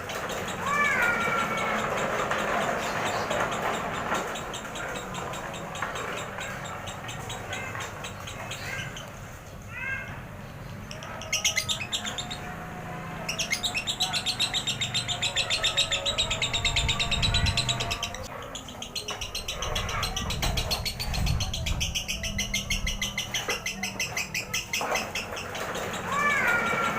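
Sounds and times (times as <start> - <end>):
lovebird chattering song: 0.0 - 9.2, 10.9 - 12.6, 13.3 - 26.8
bird chirps: 13.2 - 26.6.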